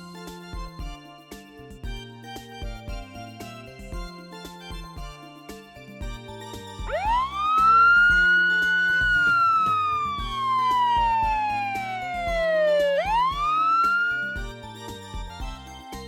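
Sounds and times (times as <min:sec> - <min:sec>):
background music with steady beat: 0:00.0 - 0:16.0
siren wailing: 0:06.9 - 0:14.6.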